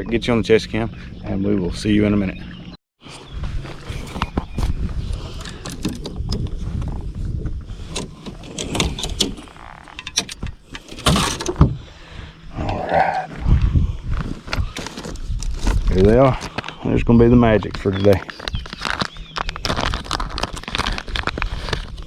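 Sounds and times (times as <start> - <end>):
low rumble: 11.7 - 16.0.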